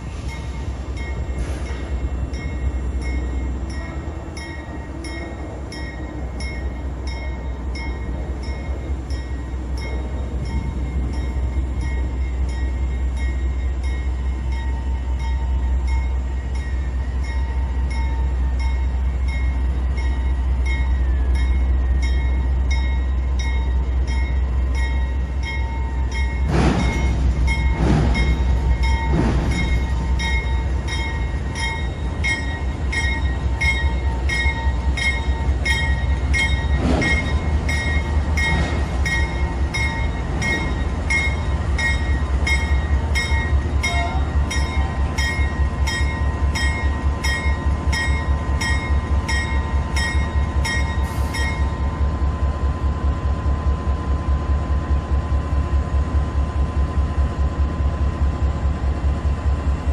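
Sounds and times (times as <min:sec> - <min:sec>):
freight train rumbling past: 0:00.0 - 0:59.9
heavy metal clanks: 0:26.2 - 0:33.9.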